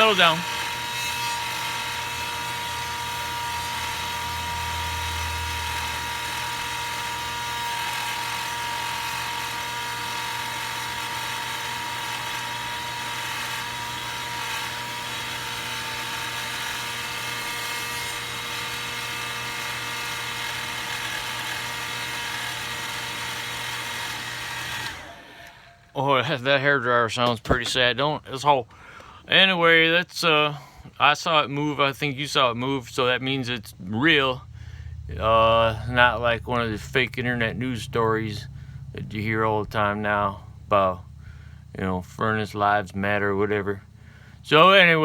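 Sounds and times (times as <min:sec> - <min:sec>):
hair dryer blowing air: 0:00.0 - 0:25.9.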